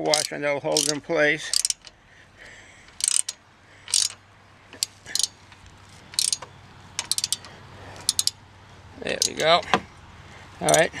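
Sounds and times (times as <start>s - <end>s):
ratchet wrench clicking: 0.0s - 2.0s, 2.9s - 8.4s, 9.0s - 9.7s, 10.6s - 10.9s.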